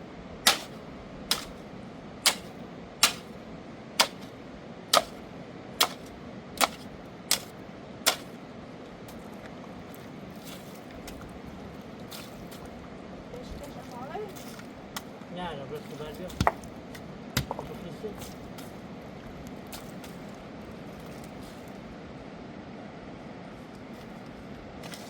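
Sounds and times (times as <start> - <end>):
steady rushing noise: 0.0 - 9.3
sharp knocks: 0.5 - 1.5, 2.2 - 3.3, 5.8 - 7.5.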